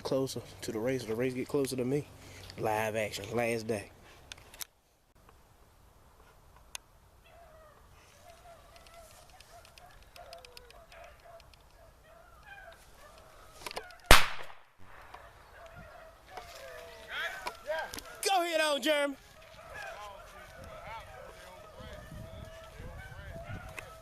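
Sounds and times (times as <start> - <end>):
distant dogs baying: 7.2 - 14.2, 15.0 - 18.4, 19.2 - 24.0.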